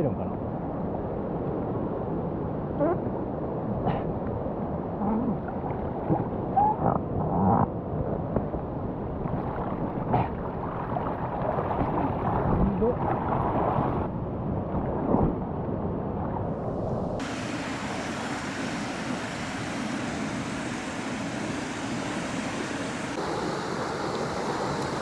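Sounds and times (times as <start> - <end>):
splashes and knocks: 9.2 - 14.1
river rushing through rapids: 17.2 - 25.0.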